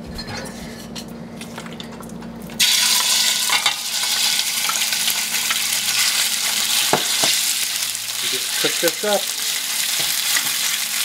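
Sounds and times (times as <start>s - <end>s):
chicken sizzling in hot oil: 2.6s - 11.0s.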